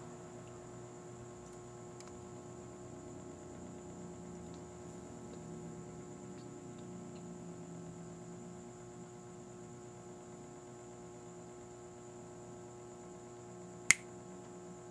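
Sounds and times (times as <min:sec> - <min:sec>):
electrical hum: 0:00.0 - 0:14.9
sharp click: 0:13.9 - 0:14.1.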